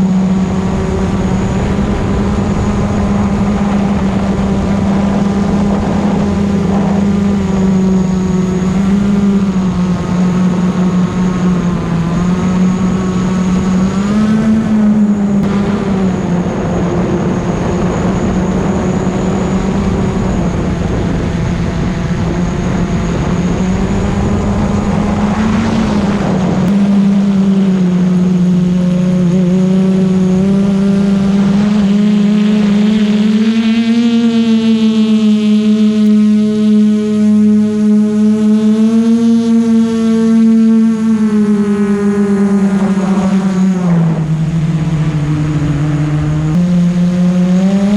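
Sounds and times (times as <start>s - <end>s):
drone propellers whining: 0.0s - 47.9s.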